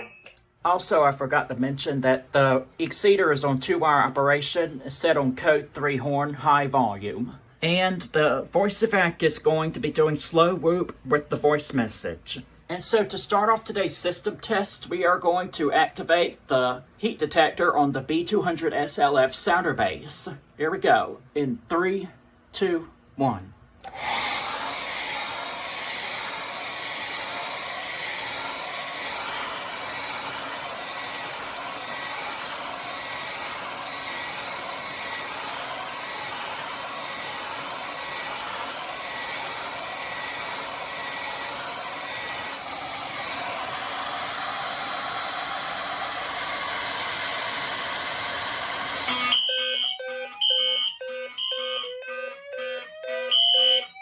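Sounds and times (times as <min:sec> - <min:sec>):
hair dryer blowing: 0:23.8 - 0:49.3
fire alarm horn tones: 0:49.1 - 0:54.0.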